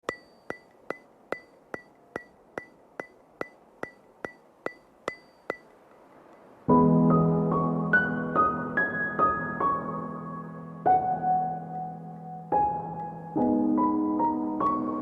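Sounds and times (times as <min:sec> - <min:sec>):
metronome-like ticks with ring: 0:00.0 - 0:06.6.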